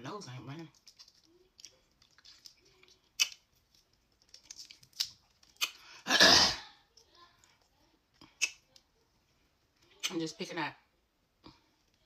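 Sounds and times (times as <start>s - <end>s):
crab shell cracking: 0.7s - 5.9s
wet mouth smacking: 0.8s - 3.5s, 8.2s - 8.6s.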